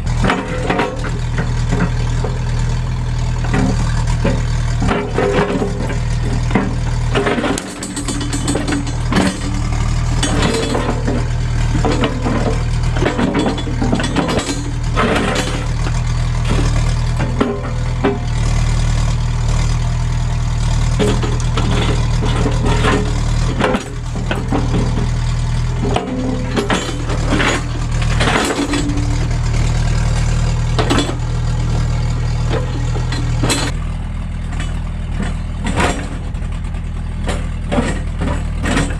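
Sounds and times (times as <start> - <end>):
excavator diesel engine running: 0.0 - 38.9
bucket clanks and knocks: 0.2 - 2.4, 3.5 - 18.2, 25.8 - 29.3.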